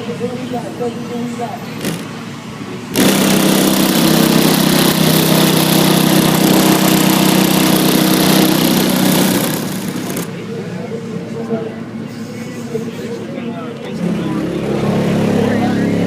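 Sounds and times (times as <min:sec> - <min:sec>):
loud buzzing bass tone: 0:03.0 - 0:10.3.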